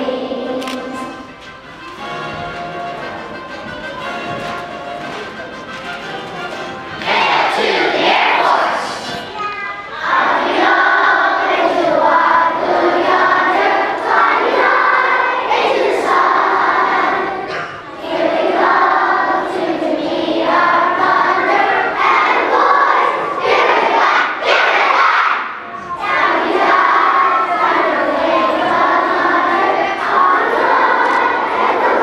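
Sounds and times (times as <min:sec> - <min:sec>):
children singing in unison: 0:00.0 - 0:01.3, 0:07.0 - 0:09.2, 0:09.9 - 0:32.0.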